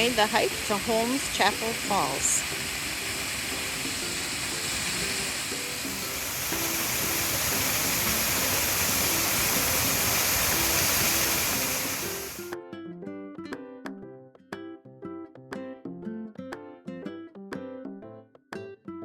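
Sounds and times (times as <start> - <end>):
waterfall roaring: 0.0 - 12.4
soft plucked string music: 2.5 - 19.0.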